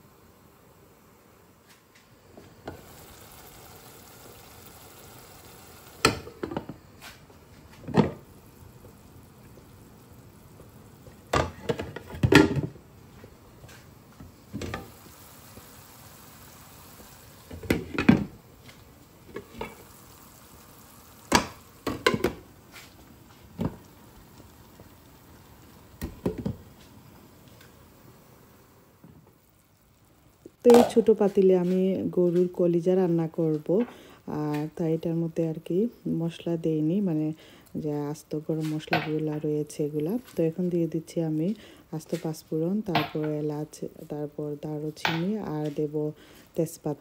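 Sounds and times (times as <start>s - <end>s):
faint sizzle: 0.0s - 47.0s
metal pots and lids clattering: 11.3s - 12.8s.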